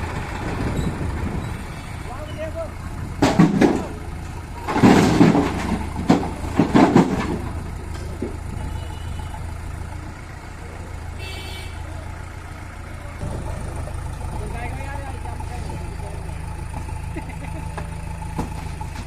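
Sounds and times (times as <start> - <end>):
heavy diesel engine running: 0.0 - 19.0.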